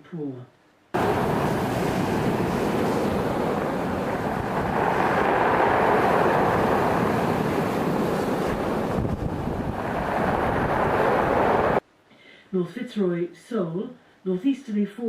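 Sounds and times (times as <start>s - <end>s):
wind and surf rushing: 1.0s - 11.8s
wind buffeting microphone: 1.0s - 11.8s.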